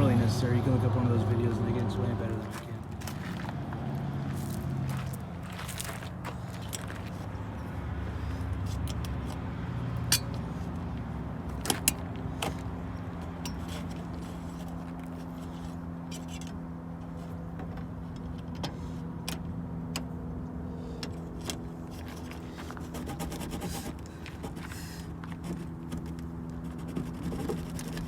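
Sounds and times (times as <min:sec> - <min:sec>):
wire hanger scraping in car door: 0:21.4 - 0:28.0.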